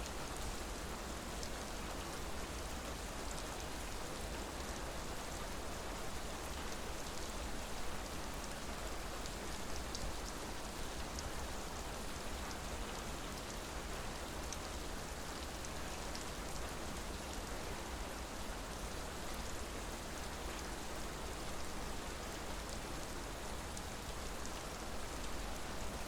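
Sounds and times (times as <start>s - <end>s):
steady rain hiss: 0.0s - 26.0s.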